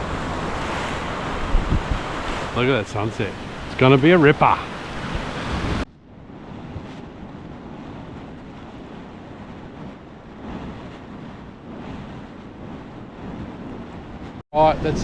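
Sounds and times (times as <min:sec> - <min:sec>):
ocean surf washing: 0:00.0 - 0:15.0
wind buffeting microphone: 0:00.0 - 0:15.0.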